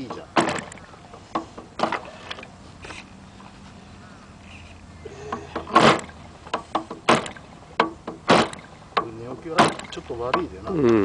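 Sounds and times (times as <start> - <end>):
propeller flicked by hand knocks: 5.3 - 10.6.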